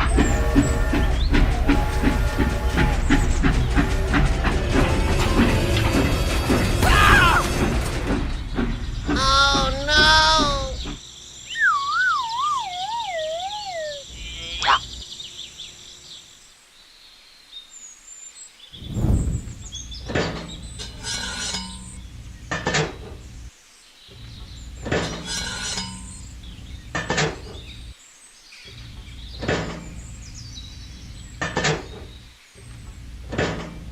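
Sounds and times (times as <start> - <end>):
wavering falling whistle-like tone: 0.0 - 7.4, 11.5 - 14.8.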